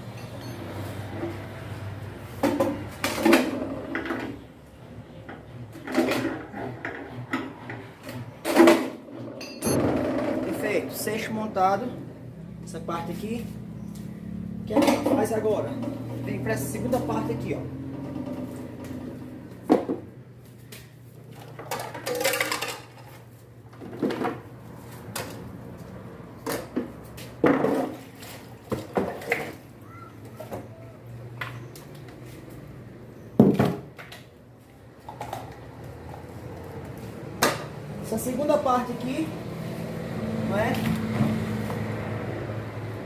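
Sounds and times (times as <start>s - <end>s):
knocks and clinks of hard parts: 8.4s - 10.6s.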